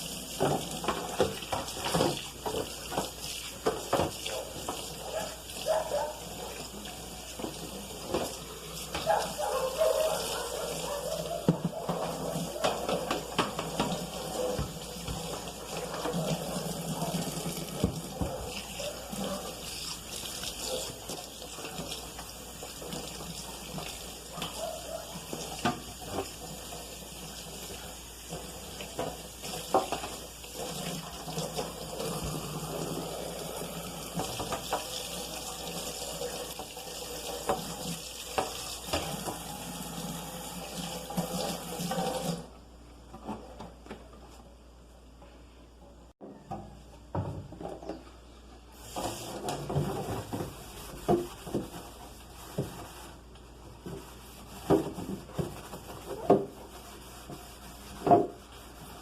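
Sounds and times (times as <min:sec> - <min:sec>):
tap water running into sink: 0:00.0 - 0:42.5.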